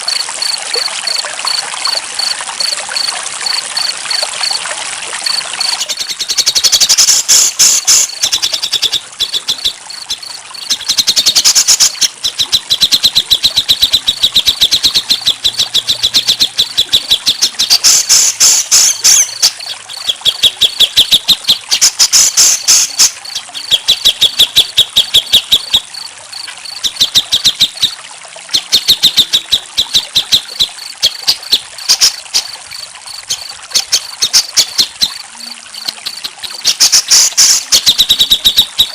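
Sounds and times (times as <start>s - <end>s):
crickets chirping: 0.0s - 4.6s, 5.2s - 6.2s, 9.2s - 12.0s, 25.6s - 26.9s.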